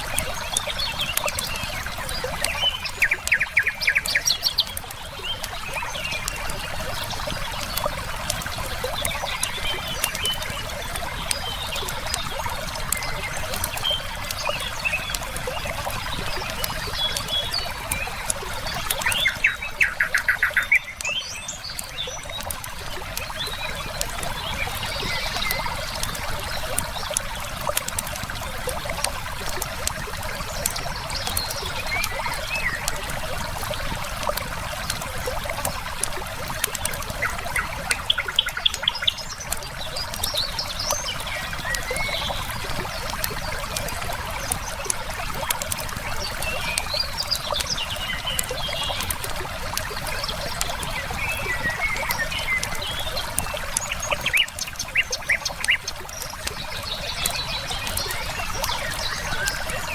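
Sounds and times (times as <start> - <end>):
fire crackling and popping: 0.0 - 59.9
river flowing: 0.0 - 59.9
songbirds chirping: 0.0 - 59.9.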